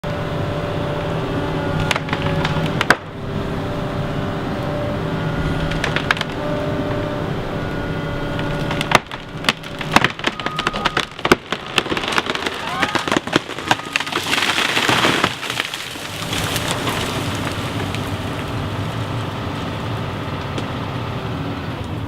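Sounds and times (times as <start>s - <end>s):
wood cracking and snapping: 1.7s - 3.2s, 5.4s - 7.0s, 8.2s - 21.0s
chainsaw cutting: 5.3s - 18.8s.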